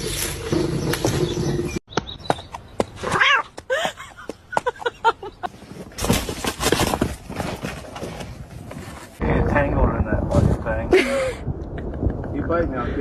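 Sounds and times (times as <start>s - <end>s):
rustling noise: 5.4s - 9.2s.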